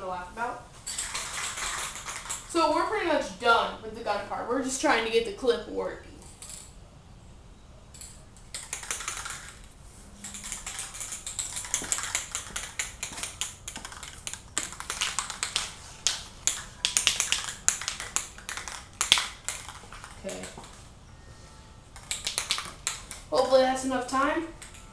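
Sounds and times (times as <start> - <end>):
spray can rattling: 0.8 - 2.6, 8.0 - 20.8, 22.0 - 23.3.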